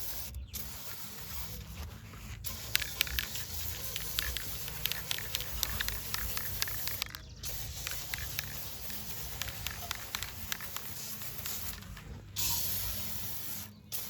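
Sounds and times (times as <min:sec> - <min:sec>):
spray hissing: 0:00.0 - 0:14.0
sharp crackling ticks: 0:02.4 - 0:12.1.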